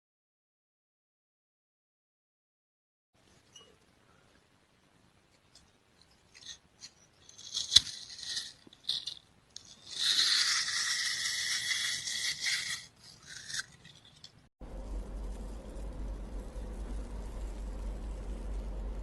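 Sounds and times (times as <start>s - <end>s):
high-pitched scraping strokes: 6.4s - 19.0s.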